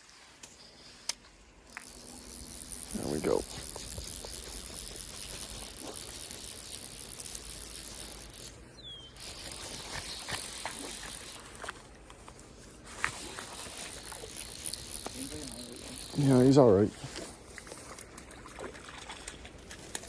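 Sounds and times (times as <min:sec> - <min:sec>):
fly reel ratchet clicking: 0:01.1 - 0:08.6, 0:09.2 - 0:11.7, 0:13.0 - 0:16.7.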